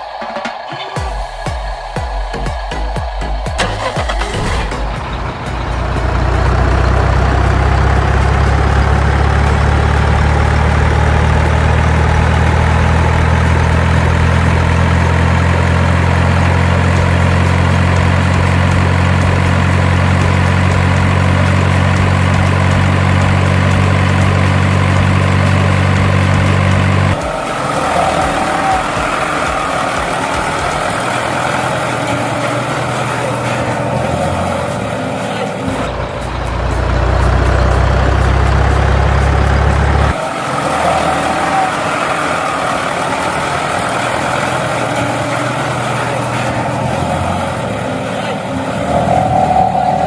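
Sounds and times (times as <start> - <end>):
heavy truck engine idling: 0.0 - 50.0
lighter engine running: 3.0 - 50.0.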